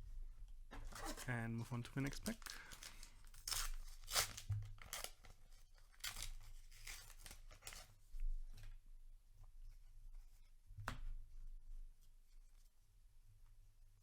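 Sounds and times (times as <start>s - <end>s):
paper wrapper tearing: 2.1s - 7.9s.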